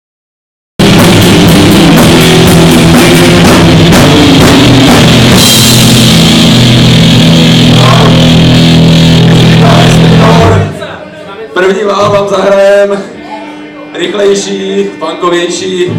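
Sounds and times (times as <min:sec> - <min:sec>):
cymbal crash: 0:00.8 - 0:10.7
rock band playing loud: 0:00.8 - 0:15.9.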